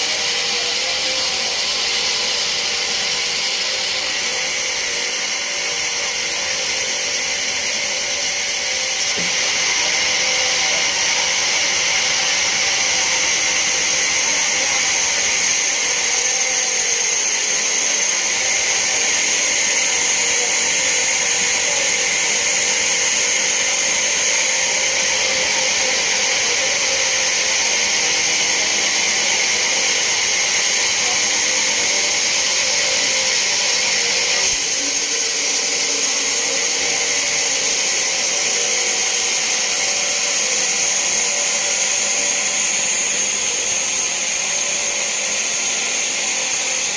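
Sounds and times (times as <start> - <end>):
band saw cutting log: 0.0 - 46.9.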